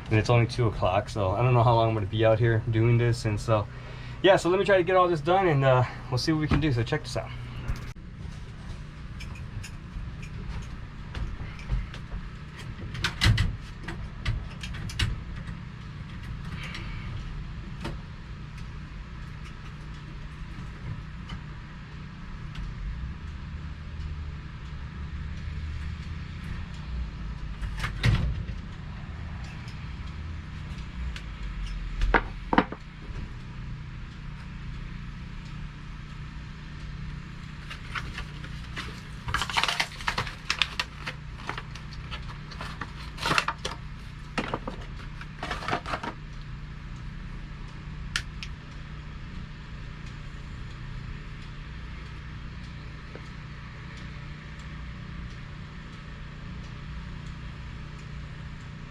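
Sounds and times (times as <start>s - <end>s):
steady low hum: 0.0s - 58.9s
objects knocking and rattling: 32.0s - 32.8s, 37.7s - 46.2s.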